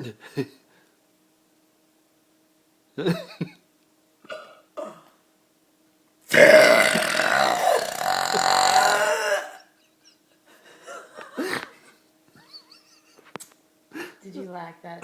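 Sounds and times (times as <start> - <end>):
woman burping loudly: 6.3 - 9.7.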